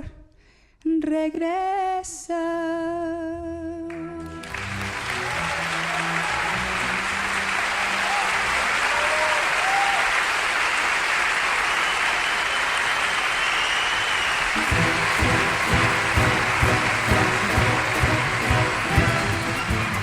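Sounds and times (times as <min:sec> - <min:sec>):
audience applauding: 0:04.2 - 0:20.0
band held notes: 0:14.6 - 0:20.0.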